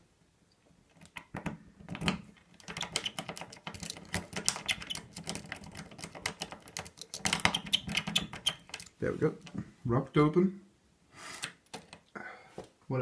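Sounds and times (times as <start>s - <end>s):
lock pick clicking and rattling: 0.9s - 9.0s.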